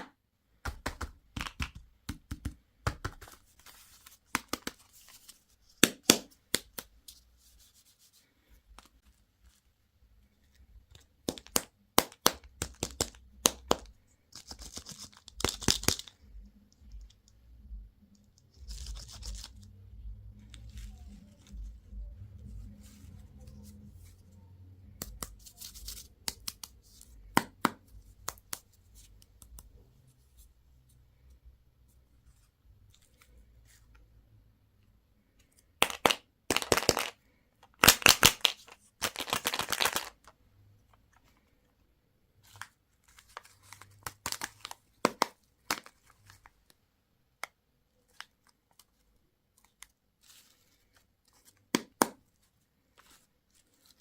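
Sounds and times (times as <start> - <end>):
packaging crinkling: 37.8 - 40.2.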